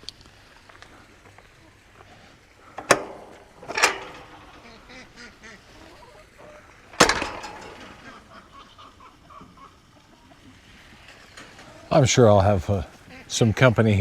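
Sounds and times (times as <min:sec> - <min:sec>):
ducks quacking: 0:04.3 - 0:10.8, 0:12.9 - 0:13.5.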